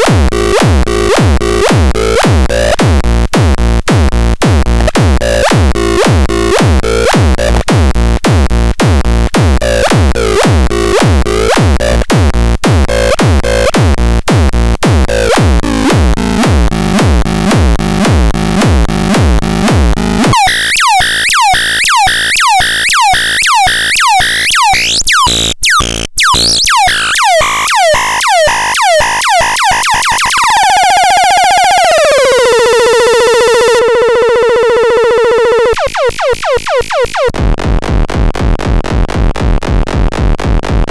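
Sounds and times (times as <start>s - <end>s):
drum machine beat: 0.0s - 30.7s, 35.8s - 40.9s
synth notes falling in pitch: 15.1s - 37.3s.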